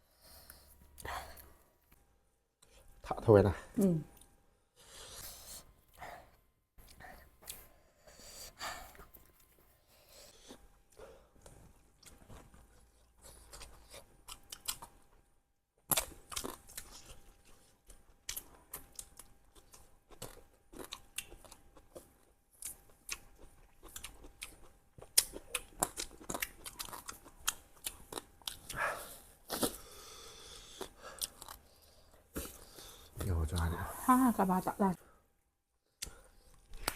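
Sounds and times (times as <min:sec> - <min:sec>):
chewing and crunching food: 0:08.8 - 0:33.8, 0:35.9 - 0:36.9.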